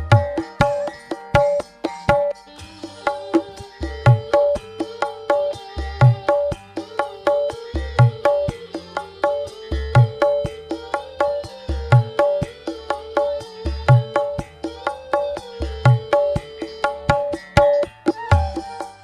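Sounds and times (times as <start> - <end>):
hand drum rhythm: 0.0 - 19.0
wavering melodic tone: 0.0 - 19.0.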